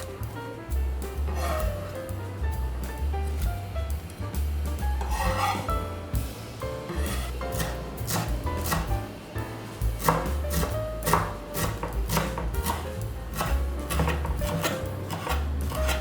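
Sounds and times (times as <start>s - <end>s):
background music: 0.0s - 16.0s
knife chopping on cutting board: 1.2s - 2.0s, 4.9s - 5.9s, 6.9s - 9.1s, 9.9s - 16.0s.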